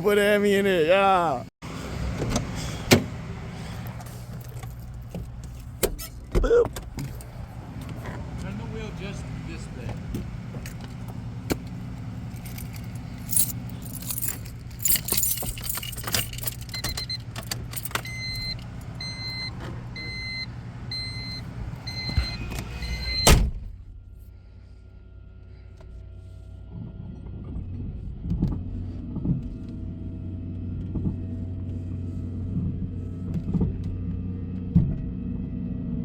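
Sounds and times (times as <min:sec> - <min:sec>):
keys jangling: 0:12.2 - 0:18.7
car door thump: 0:23.2 - 0:23.8.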